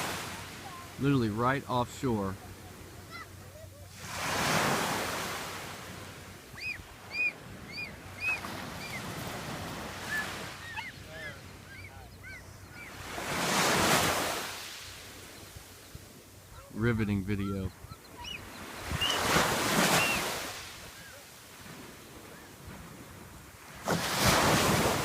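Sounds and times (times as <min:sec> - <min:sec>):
surf washing onto beach: 0:00.0 - 0:03.3, 0:03.9 - 0:06.4, 0:13.0 - 0:15.2, 0:18.9 - 0:25.0
high bird calls: 0:06.5 - 0:13.2, 0:15.2 - 0:21.3.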